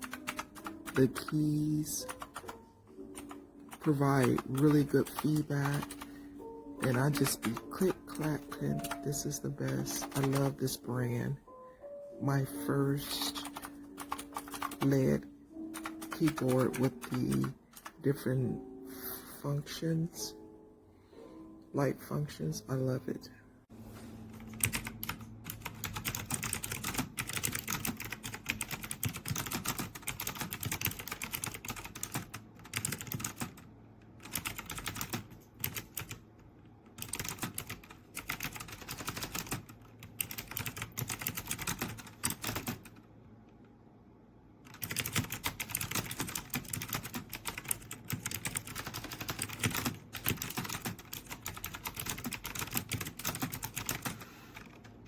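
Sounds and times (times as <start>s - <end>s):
fast typing on mechanical keyboard: 0.0s - 2.6s, 3.2s - 6.1s, 6.8s - 10.6s, 13.3s - 18.0s, 24.4s - 36.2s, 37.0s - 43.0s, 44.7s - 54.8s.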